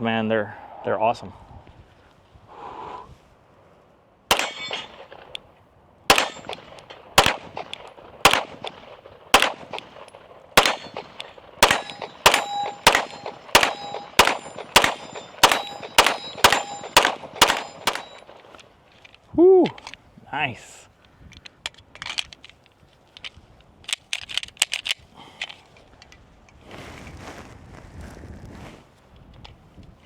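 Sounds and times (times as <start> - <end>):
metallic ring: 4.3 - 5.2, 6.2 - 7.0, 10.7 - 18.6
pistol shots: 4.3 - 5.4, 6.1 - 18.6.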